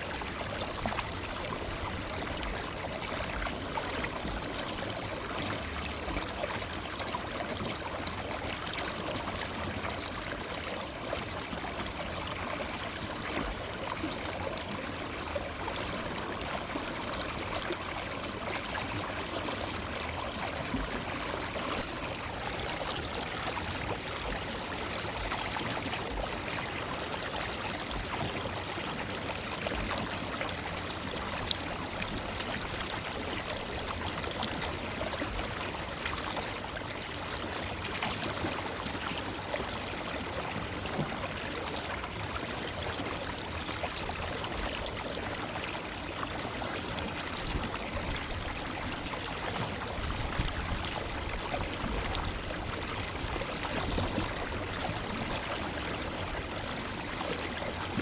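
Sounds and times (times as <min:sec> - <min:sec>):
river flowing over rocks: 0:00.1 - 0:58.0.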